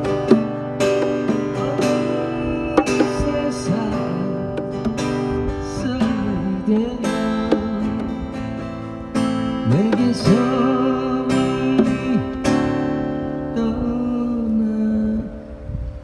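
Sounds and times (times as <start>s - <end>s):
acoustic guitar strumming: 0.0s - 16.0s.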